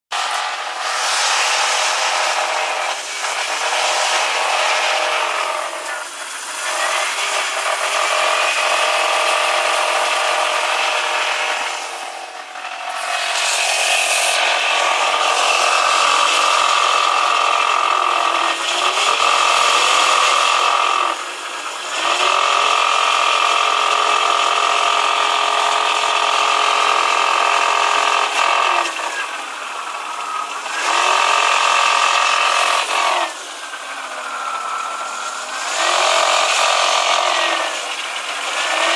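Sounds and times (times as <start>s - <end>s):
car engine idling with rattle: 14.7s - 38.9s.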